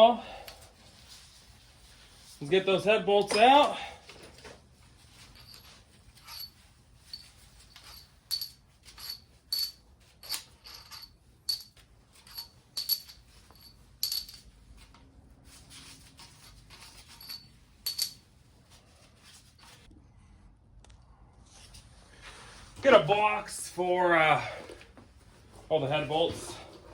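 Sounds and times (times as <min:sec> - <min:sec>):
metal bolts and tools clinking: 0:05.2 - 0:14.5, 0:16.2 - 0:18.2.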